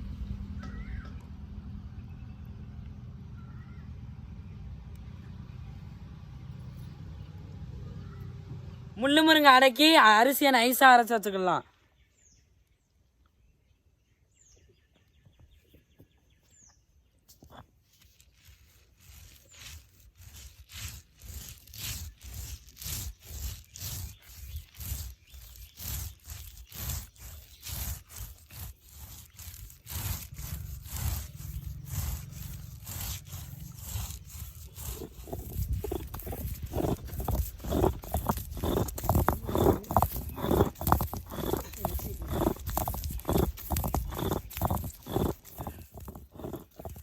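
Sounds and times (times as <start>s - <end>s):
stone rubbing on stone: 17.3s - 47.0s.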